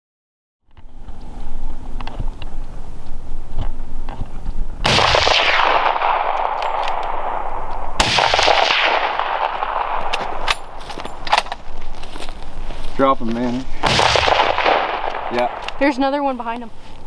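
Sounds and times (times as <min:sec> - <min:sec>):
rifle shots with rolling echo: 0:04.8 - 0:11.7, 0:13.8 - 0:16.3.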